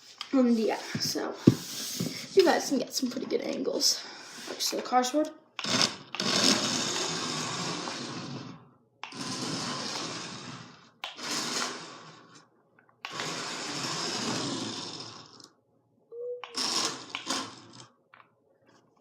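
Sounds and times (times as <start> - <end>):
toy car motor whirring: 5.6 - 12.5, 13.1 - 15.6, 16.5 - 17.9.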